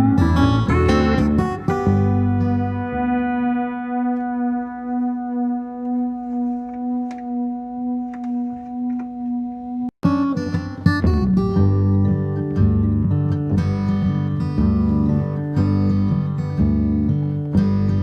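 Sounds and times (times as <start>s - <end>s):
acoustic guitar strumming: 0.0s - 18.0s
long held note: 1.6s - 9.9s.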